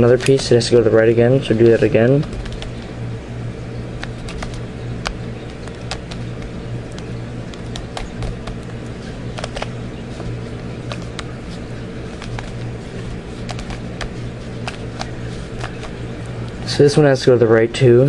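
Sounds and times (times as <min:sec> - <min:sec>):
steady low hum: 0:00.0 - 0:18.0
puzzle cube plastic clicks: 0:09.3 - 0:09.7.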